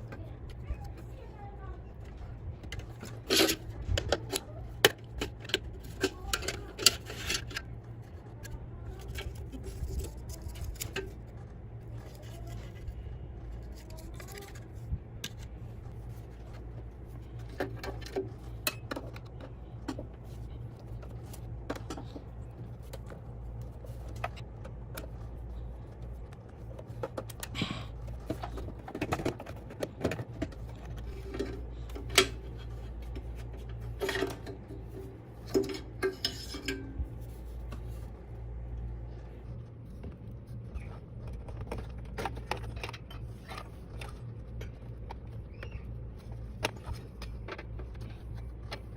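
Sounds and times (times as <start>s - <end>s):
steady low hum: 0.0s - 48.9s.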